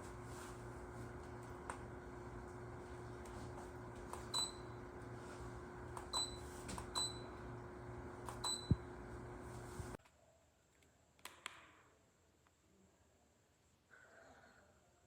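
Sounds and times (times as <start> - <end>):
ceiling fan humming: 0.0 - 10.0.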